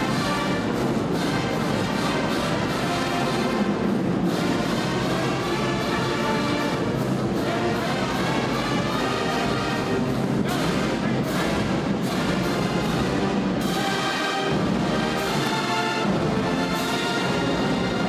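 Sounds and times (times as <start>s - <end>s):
brass band music with drums: 0.0s - 18.0s.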